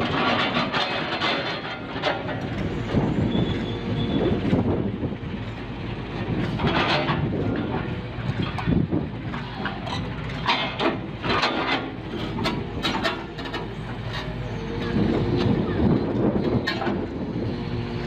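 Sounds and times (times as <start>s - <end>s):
knocks and clanks: 0.0s - 3.0s, 6.4s - 17.1s
heavy vehicle engine rumbling: 0.0s - 18.0s.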